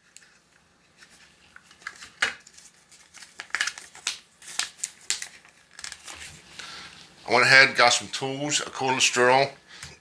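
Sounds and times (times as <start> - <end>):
plastic parts and packaging crinkling: 0.0 - 7.1.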